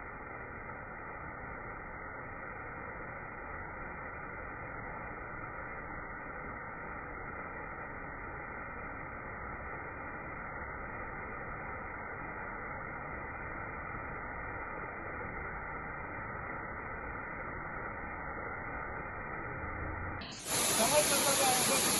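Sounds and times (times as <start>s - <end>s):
waterfall rushing: 20.2s - 21.9s.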